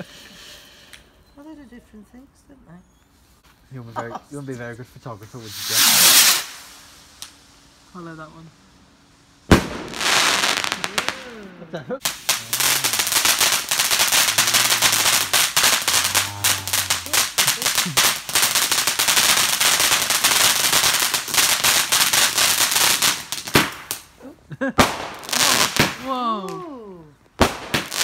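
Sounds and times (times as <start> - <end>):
fireworks crackling: 3.4 - 26.8, 27.4 - 28.0
fireworks bangs: 5.3 - 7.4, 9.4 - 24.1, 24.8 - 26.2, 27.4 - 28.0.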